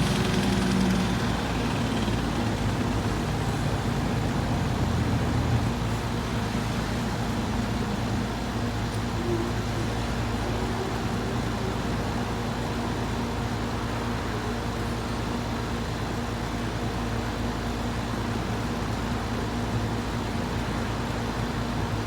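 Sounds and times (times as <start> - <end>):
condenser fan rushing: 0.0 - 22.0.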